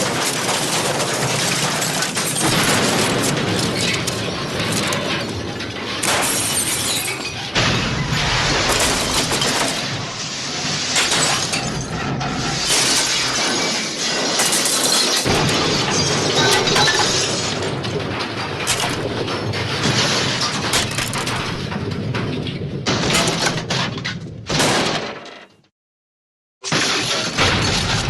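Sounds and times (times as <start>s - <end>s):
glass shattering and debris crashing: 16.4s - 17.4s.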